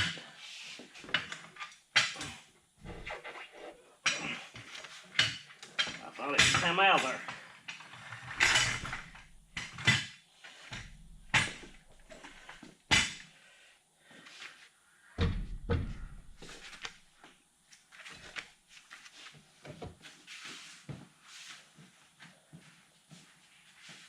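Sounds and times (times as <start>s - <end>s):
metal tools knocking and clanking: 5.2s - 10.1s
heavy thud: 15.2s - 16.6s.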